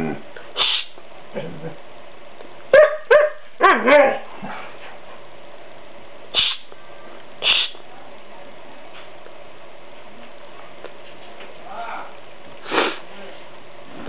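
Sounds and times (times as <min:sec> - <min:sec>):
dog barking: 0:02.7 - 0:04.2
dog yowling: 0:02.8 - 0:04.3.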